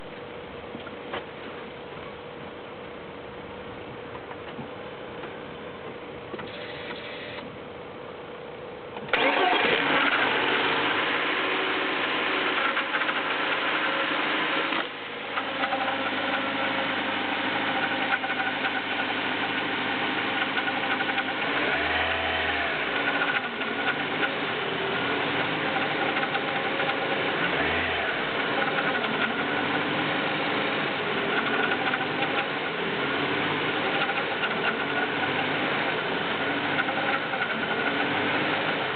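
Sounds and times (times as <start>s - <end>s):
car engine starting and idling: 9.0s - 38.9s.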